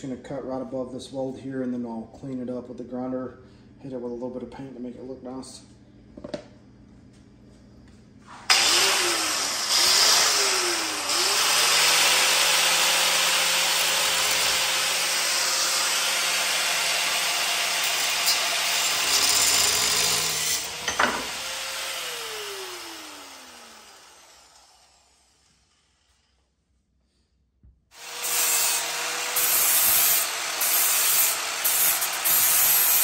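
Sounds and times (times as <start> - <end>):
angle grinder cutting steel: 8.5 - 26.1, 28.0 - 33.0.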